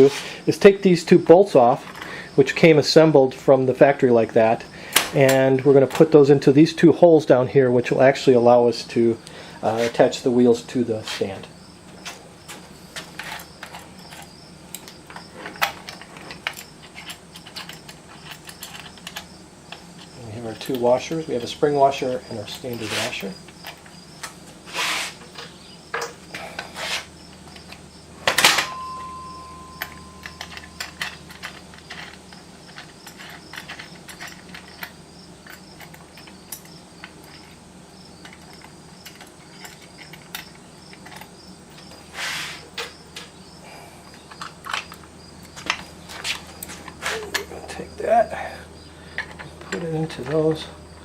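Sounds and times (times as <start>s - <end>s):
small metal parts clinking: 13.0s - 24.0s, 27.3s - 42.0s, 44.1s - 47.7s, 48.7s - 50.7s
sharp metallic clank: 28.2s - 31.6s.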